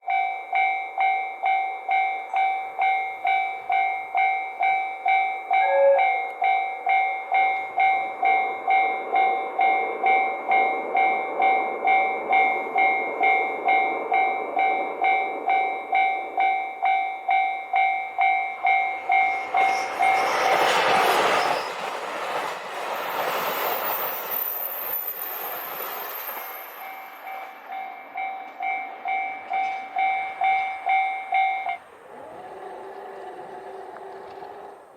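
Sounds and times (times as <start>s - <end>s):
railroad crossing bell dinging: 0.0s - 31.9s
train rushing past: 0.1s - 34.9s
train horn toot: 5.6s - 6.4s
thin high squeal: 18.9s - 22.0s, 23.2s - 27.5s.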